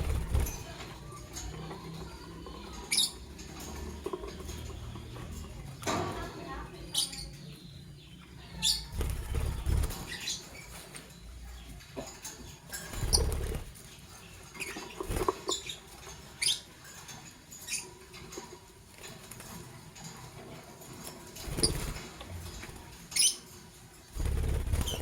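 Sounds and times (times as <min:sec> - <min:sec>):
wings fluttering: 0:00.0 - 0:01.0, 0:08.9 - 0:11.0, 0:12.7 - 0:13.9, 0:14.6 - 0:15.8, 0:21.1 - 0:23.4, 0:24.1 - 0:25.0
lovebirds chirping: 0:00.0 - 0:16.8, 0:21.4 - 0:25.0.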